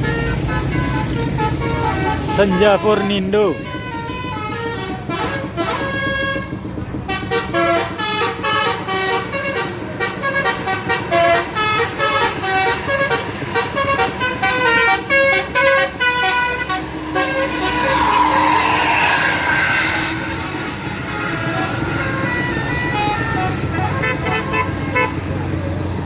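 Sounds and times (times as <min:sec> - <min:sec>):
bus horn playing a tune: 0:00.0 - 0:26.0
rush of noise: 0:16.5 - 0:22.5.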